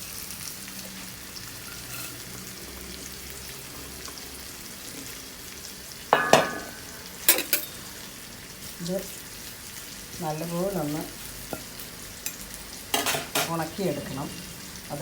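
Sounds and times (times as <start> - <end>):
leaves crackling in hot pan: 0.0 - 15.0
utensil clattering against pan: 6.2 - 7.8, 12.2 - 13.6.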